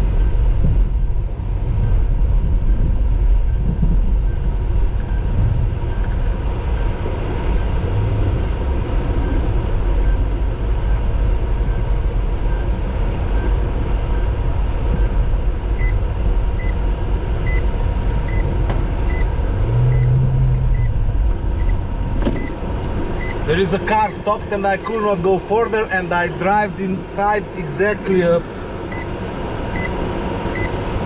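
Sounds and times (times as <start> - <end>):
car interior rumble: 0.0 - 31.0
car electronic beeps: 1.8 - 8.6, 9.2 - 9.4, 10.0 - 10.2, 10.8 - 11.9, 12.5 - 15.2, 15.8 - 16.0, 16.6 - 16.8, 17.4 - 17.6, 18.3 - 18.5, 19.1 - 22.6, 23.2 - 26.2, 28.9 - 30.8.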